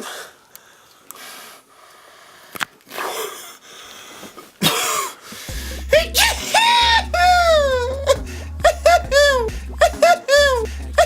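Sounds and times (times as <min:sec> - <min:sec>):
man wheezing: 0:04.6 - 0:11.0
loud sneeze: 0:06.0 - 0:07.0.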